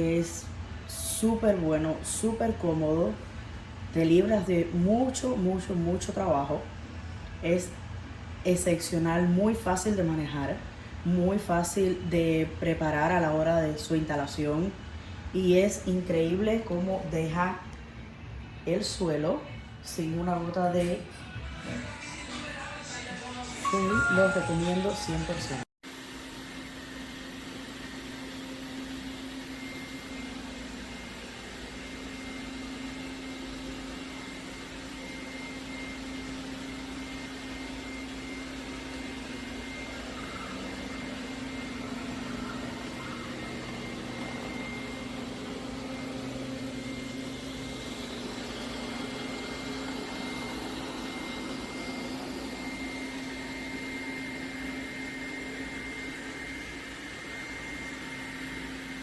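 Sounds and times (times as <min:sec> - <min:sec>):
robot vacuum motor hum: 0:37.6 - 0:59.0.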